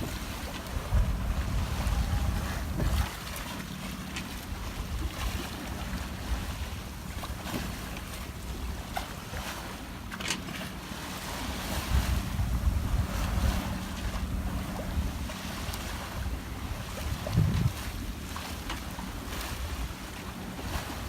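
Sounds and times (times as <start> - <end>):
wind buffeting microphone: 0.0 - 3.6, 11.4 - 21.0
steady low hum: 0.0 - 10.1, 10.8 - 21.0
water washing against hull: 0.0 - 21.0.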